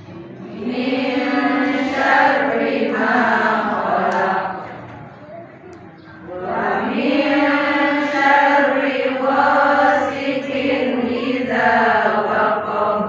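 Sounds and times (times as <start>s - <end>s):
person chanting melodic recitation: 6.2s - 13.0s.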